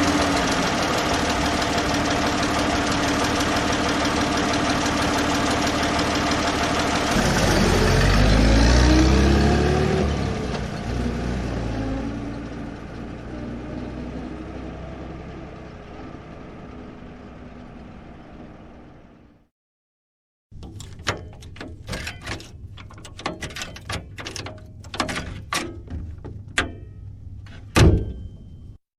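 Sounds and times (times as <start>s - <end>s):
old car engine revving: 0.0s - 17.3s
sharp clicks and knocks: 20.6s - 28.5s.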